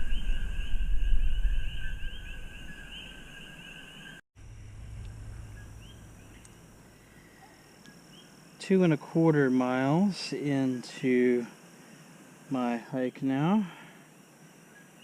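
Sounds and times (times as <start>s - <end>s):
frogs chirping: 0.0s - 15.0s
high insect-like hum: 0.0s - 15.0s
low rumble: 4.4s - 7.2s.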